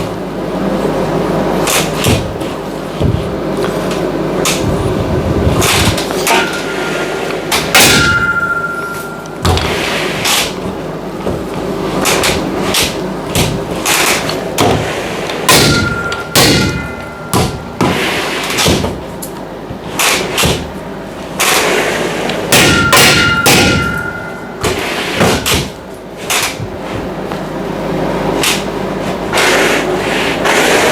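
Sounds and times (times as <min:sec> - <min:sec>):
knocks and thuds on metal: 0:15.5 - 0:18.0, 0:18.6 - 0:19.1, 0:22.5 - 0:25.8.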